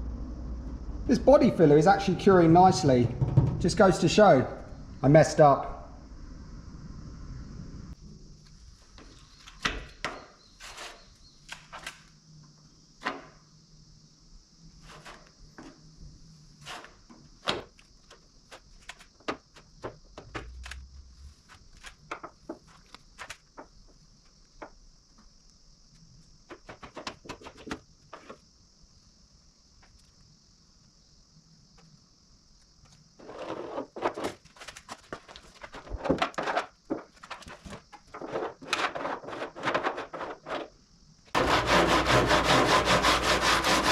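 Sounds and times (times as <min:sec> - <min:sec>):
hand sanding body filler: 0:41.4 - 0:43.9.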